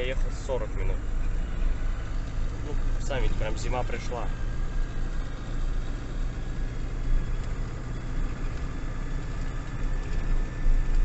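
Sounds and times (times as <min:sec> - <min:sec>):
diesel engine idling: 0:00.0 - 0:11.0.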